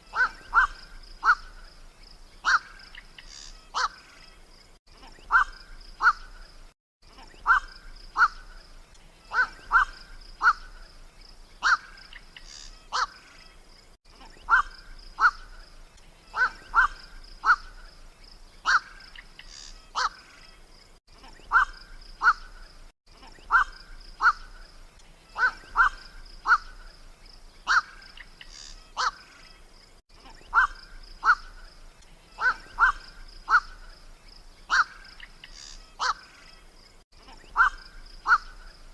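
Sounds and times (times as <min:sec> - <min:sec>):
heron harsh calls: 0:00.1 - 0:01.5, 0:11.6 - 0:13.2, 0:14.5 - 0:15.5, 0:18.6 - 0:20.2, 0:25.4 - 0:26.8, 0:27.7 - 0:29.2, 0:30.5 - 0:31.6, 0:32.4 - 0:33.8, 0:34.7 - 0:36.3, 0:37.5 - 0:38.6.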